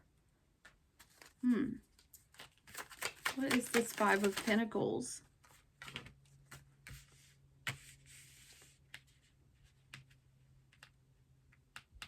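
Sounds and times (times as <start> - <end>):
soft rustle of cards: 0.6 - 11.0
cards clicking: 2.4 - 4.6.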